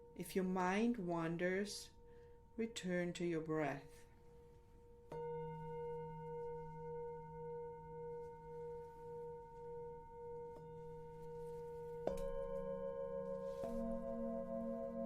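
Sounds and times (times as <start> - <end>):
singing bowl ringing: 4.8 - 15.0.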